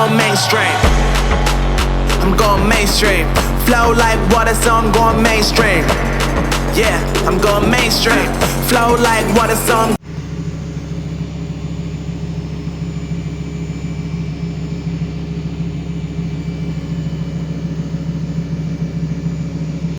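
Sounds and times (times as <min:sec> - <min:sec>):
car engine idling: 0:00.0 - 0:19.9.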